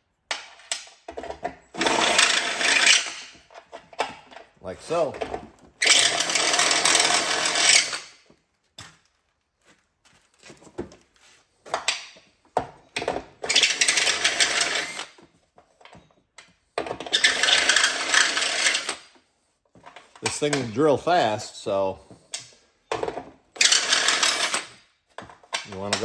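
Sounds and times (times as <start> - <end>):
drill drilling into metal: 1.8 - 3.4, 5.8 - 8.2, 13.5 - 15.1, 17.1 - 19.0, 23.6 - 24.8.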